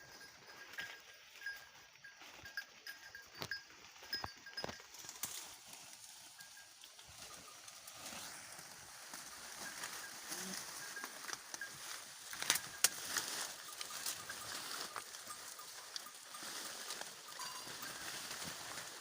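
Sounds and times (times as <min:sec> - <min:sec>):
leafy branches rustling: 0:04.9 - 0:19.0
branches snapping: 0:12.3 - 0:14.1.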